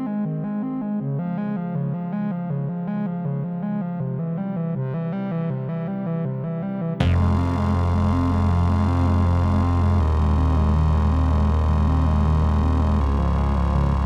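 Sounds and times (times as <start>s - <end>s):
electronic synthesizer music: 7.0s - 14.0s.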